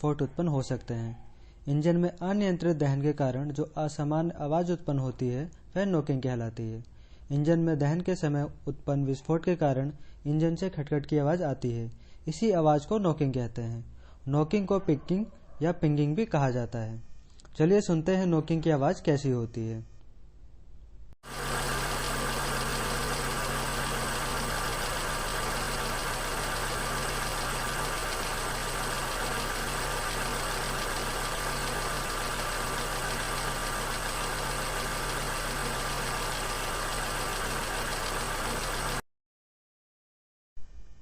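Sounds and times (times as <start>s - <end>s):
car engine knocking: 21.3s - 39.0s.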